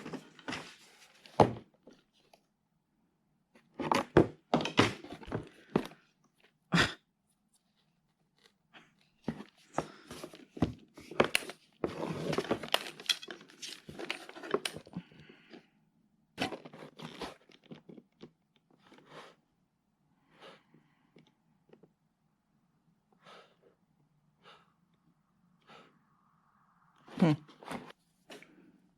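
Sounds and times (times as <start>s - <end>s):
packaging rustling and crinkling: 11.0s - 14.9s.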